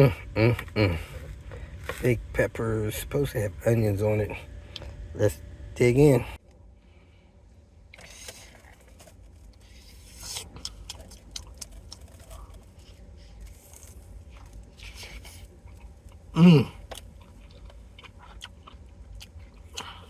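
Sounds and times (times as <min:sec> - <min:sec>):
chewing crunchy sandwich: 0:07.9 - 0:20.0.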